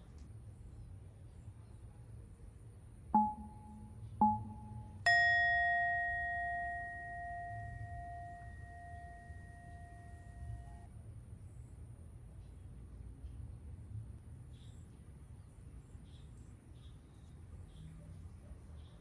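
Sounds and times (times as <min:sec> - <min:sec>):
bell chime dings: 0:03.2 - 0:10.8.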